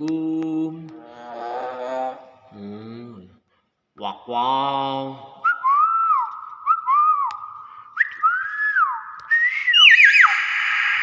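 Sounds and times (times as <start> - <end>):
myna whistling: 5.4 - 11.0.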